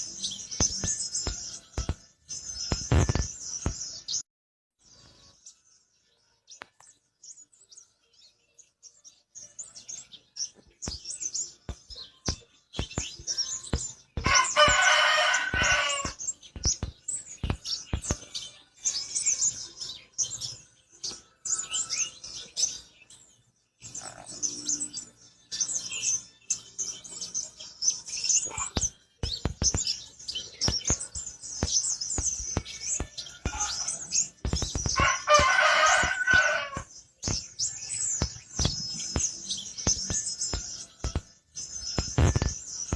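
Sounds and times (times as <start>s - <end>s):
songbird chirping: 0.0s - 4.2s, 4.8s - 42.9s
rooster crowing: 14.2s - 16.2s, 35.0s - 36.9s.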